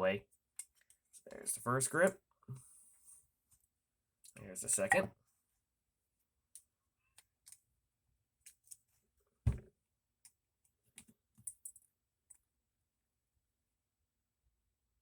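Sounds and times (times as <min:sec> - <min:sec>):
knock on work surface: 0:09.5 - 0:09.7.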